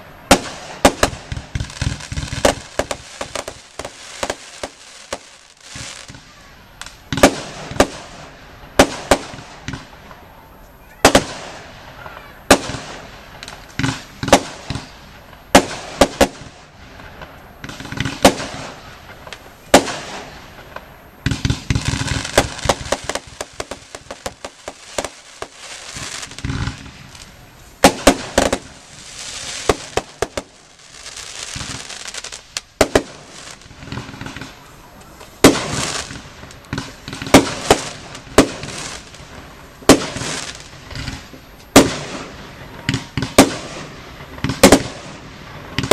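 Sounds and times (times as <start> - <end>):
firework bangs: 0.0 - 45.9
firework crackling: 0.0 - 45.9.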